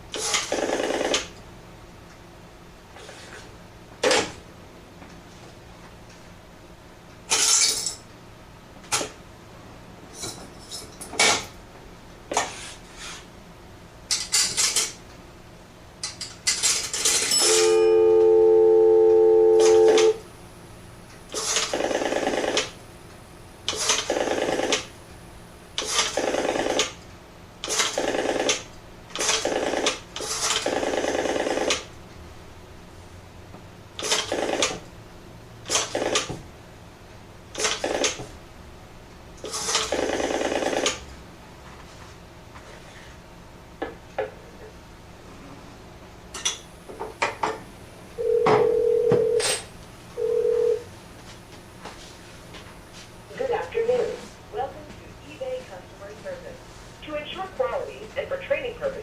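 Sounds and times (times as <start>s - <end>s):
dial tone: 17.4s - 20.2s, 48.2s - 49.5s, 50.2s - 50.9s
payphone mechanism clicks: 19.5s - 20.2s.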